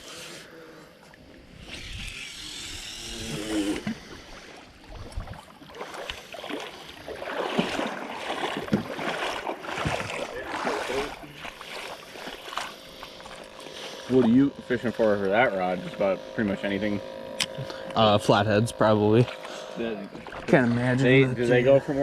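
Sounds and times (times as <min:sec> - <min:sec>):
water splashing and sloshing: 0:00.9 - 0:15.0, 0:19.0 - 0:22.0.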